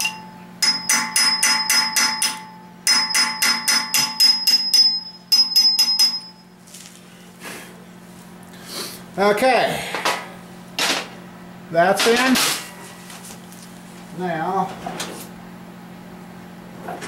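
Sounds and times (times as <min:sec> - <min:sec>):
hammer striking metal punch: 0:00.0 - 0:06.3.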